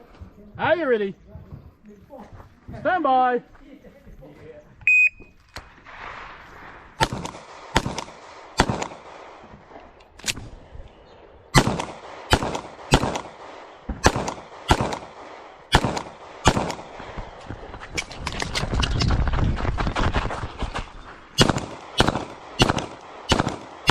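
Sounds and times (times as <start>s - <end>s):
shot timer beep: 4.8s - 5.2s
pistol shots: 7.0s - 9.5s, 11.5s - 17.1s, 21.4s - 23.9s.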